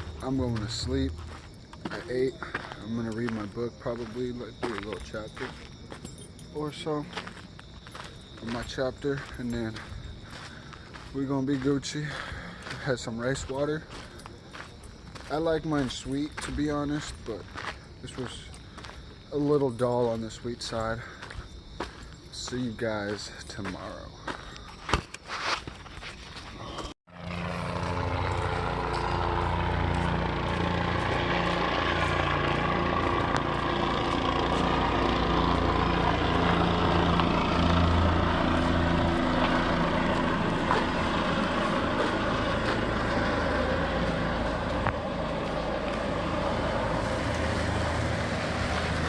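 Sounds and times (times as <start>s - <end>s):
helicopter engine and rotor: 26.8s - 49.0s.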